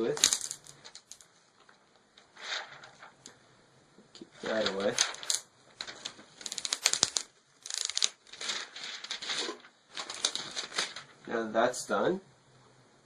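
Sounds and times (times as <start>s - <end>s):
plastic cover crinkling: 0.0s - 3.4s, 4.2s - 11.3s.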